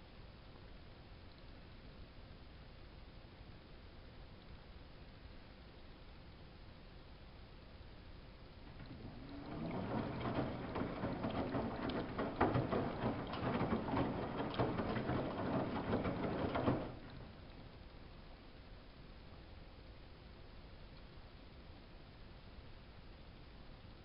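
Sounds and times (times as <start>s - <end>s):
water and laundry sloshing: 8.6s - 17.8s
washing machine motor hum: 8.6s - 17.9s.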